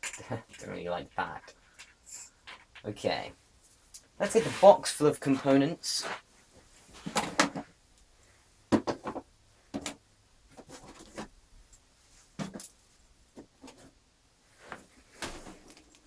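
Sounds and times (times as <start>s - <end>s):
objects knocking and bumping: 7.0s - 7.7s, 8.7s - 11.3s.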